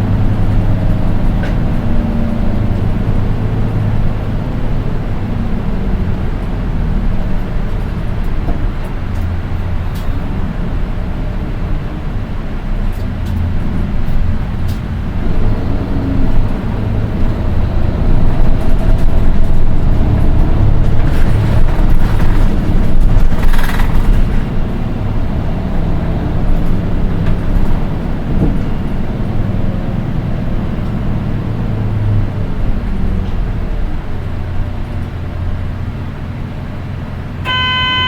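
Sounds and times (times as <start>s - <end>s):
bus diesel engine rumble: 0.0s - 38.0s
high-pitched engine note: 37.4s - 38.0s.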